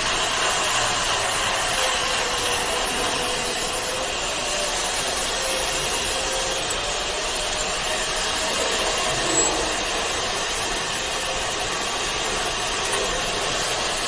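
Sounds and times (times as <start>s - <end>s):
hydraulic unit and cooling fans: 0.0s - 14.0s.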